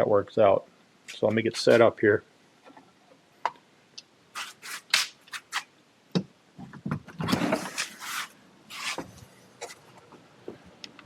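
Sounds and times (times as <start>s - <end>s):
scraping and rustling: 4.3s - 5.7s, 7.1s - 10.0s.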